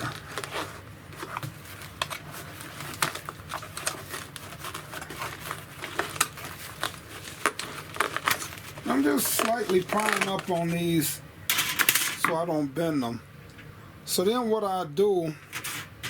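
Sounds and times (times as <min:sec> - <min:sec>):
trim piece clicking and crinkling: 0:01.2 - 0:10.6.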